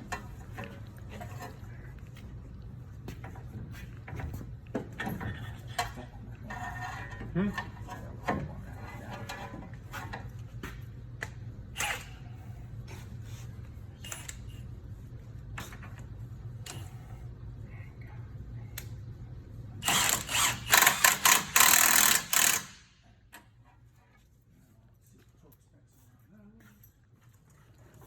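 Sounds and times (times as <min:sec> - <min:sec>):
steady low hum: 0:00.0 - 0:28.0
impact wrench hammering: 0:19.8 - 0:23.0.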